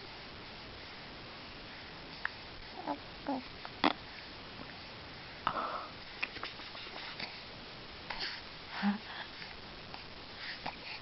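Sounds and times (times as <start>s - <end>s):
baby snuffly breathing: 6.2s - 7.5s.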